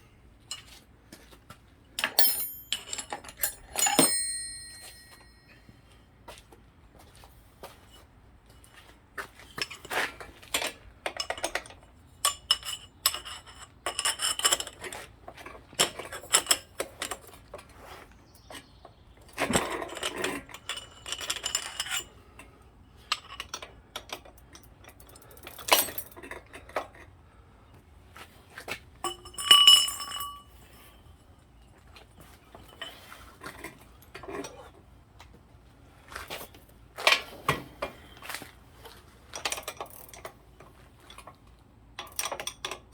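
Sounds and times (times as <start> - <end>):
metal hand tools clinking: 2.0 - 5.6, 29.0 - 30.8.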